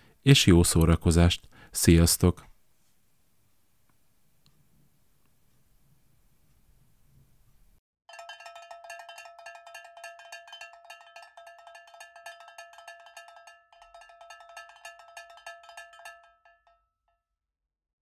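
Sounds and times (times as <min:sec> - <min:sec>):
bell-like percussion jingle: 0:08.1 - 0:17.1.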